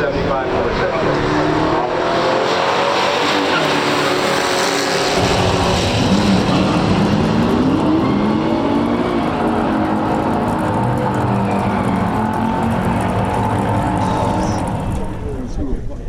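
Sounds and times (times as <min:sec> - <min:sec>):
car engines revving hard: 0:00.0 - 0:15.4
deeper engine rumble: 0:05.0 - 0:16.0.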